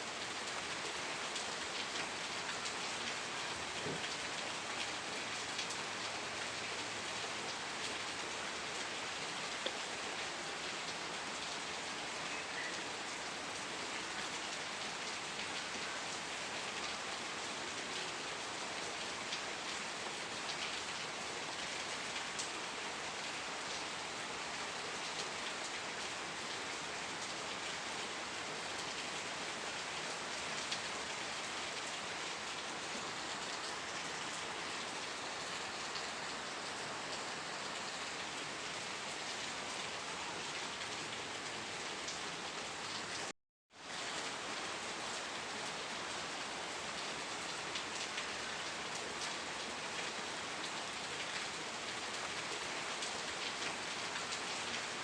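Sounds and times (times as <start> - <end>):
rain pattering on a surface: 0.0 - 55.0.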